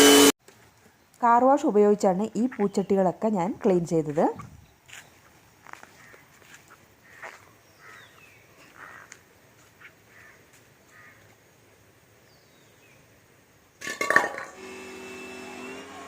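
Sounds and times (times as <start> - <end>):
pressure washer motor hum: 0.0 - 0.3, 14.3 - 16.0
faint bird calls: 4.4 - 11.4.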